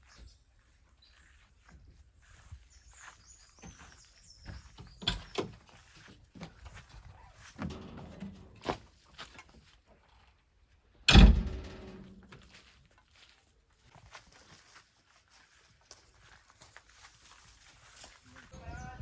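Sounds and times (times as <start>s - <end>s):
loud heavy thump: 11.1s - 12.0s
knocks and thuds: 11.1s - 12.1s.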